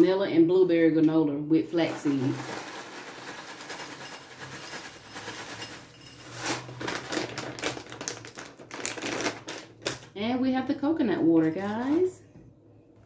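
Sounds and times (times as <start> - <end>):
granola poured into a bowl: 1.9 - 9.5.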